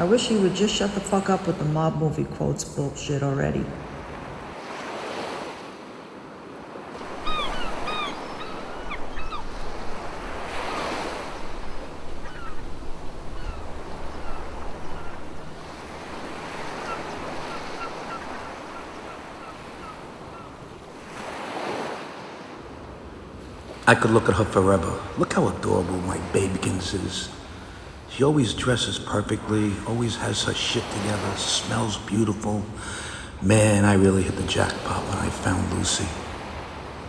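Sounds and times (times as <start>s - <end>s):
surf breaking on beach: 6.9s - 37.0s
bird calls: 7.0s - 21.0s.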